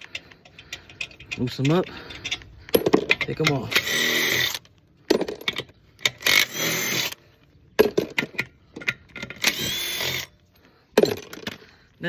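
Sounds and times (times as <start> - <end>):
metallic clicks and knocks: 0.0 - 3.8, 7.8 - 9.6
impact gun spinning lug nuts: 9.3 - 10.3.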